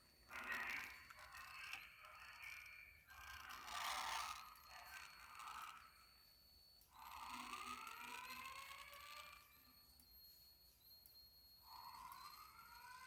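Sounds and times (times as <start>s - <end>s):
fire alarm evacuation tone: 4.3s - 13.0s.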